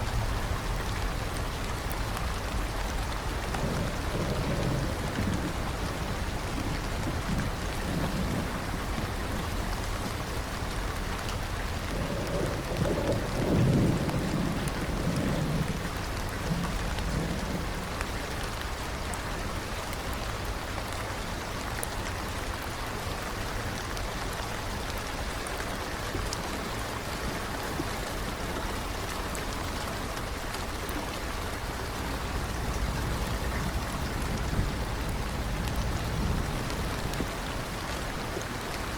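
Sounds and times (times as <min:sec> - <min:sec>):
thunder rolling: 0:00.0 - 0:18.2, 0:31.6 - 0:38.5
rain pattering: 0:00.0 - 0:38.9.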